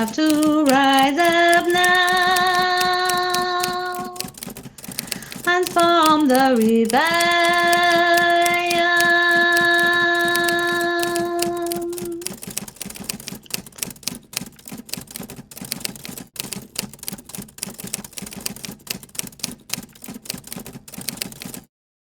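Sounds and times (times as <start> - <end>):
rapid clatter of sharp clicks: 0.0 - 21.7
held sung note: 5.4 - 12.3.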